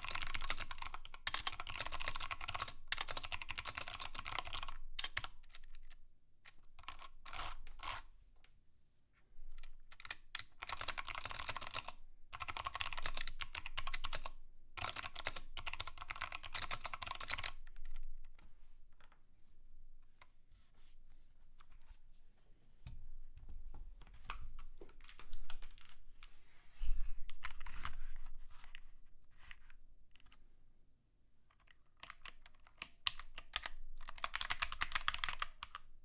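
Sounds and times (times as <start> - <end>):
clicky mechanical keyboard typing: 0.0 - 6.0, 6.8 - 8.0, 9.6 - 18.0, 24.3 - 26.0, 31.5 - 35.9.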